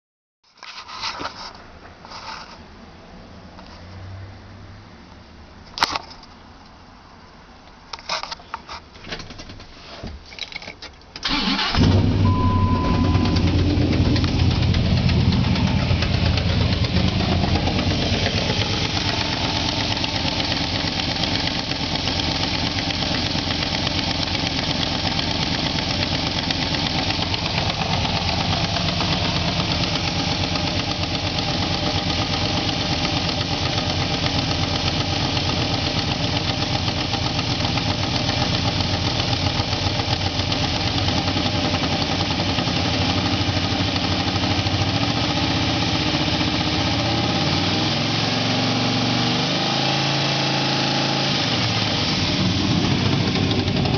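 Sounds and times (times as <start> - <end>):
truck engine starting and idling: 11.2 - 53.9
brief high tone: 11.9 - 16.1.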